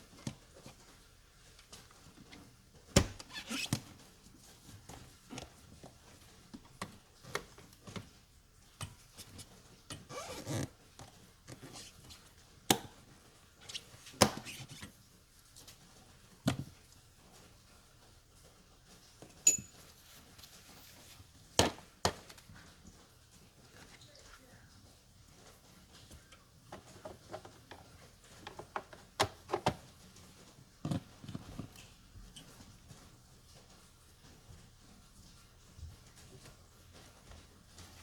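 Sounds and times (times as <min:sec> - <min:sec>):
tools clicking and knocking: 0:19.4 - 0:19.9
brief metallic ring: 0:19.5 - 0:19.8.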